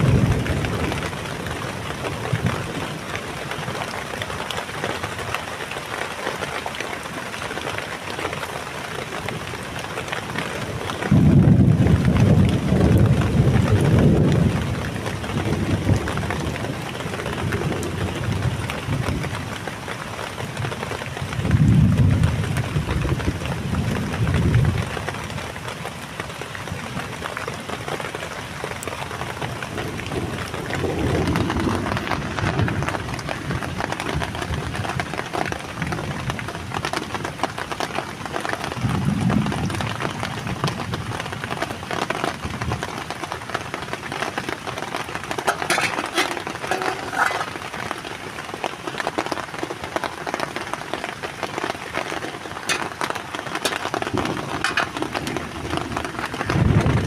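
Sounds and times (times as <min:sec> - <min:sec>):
thunder rumbling: 0:00.0 - 0:03.0, 0:11.0 - 0:19.3, 0:29.7 - 0:34.7, 0:44.9 - 0:48.1, 0:51.9 - 0:57.0
heavy rain falling: 0:00.0 - 0:57.0.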